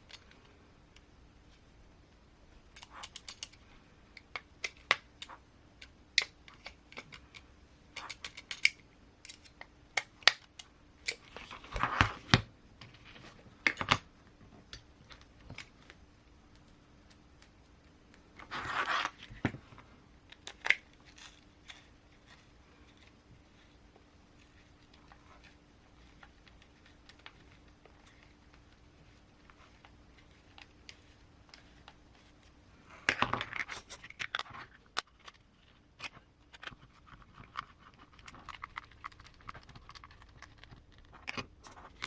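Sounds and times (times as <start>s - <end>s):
rustling scrapes: 18.4s - 19.9s.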